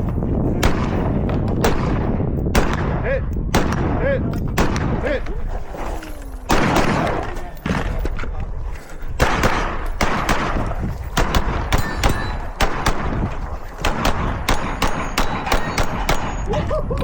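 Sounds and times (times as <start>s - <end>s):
rapid gunshots: 0.6s - 5.0s, 6.5s - 7.8s, 9.2s - 16.5s.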